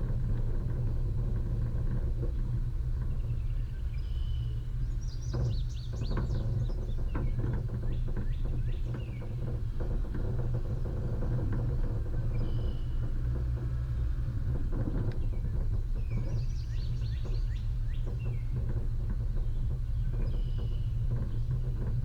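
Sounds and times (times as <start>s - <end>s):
off-road vehicle engine rumbling: 0.0s - 22.0s
light knocks and rattles: 4.8s - 22.0s.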